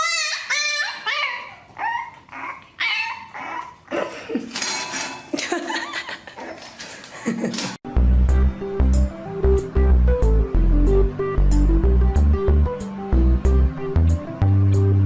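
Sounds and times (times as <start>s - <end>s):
dog yelping and whining: 0.0s - 3.9s.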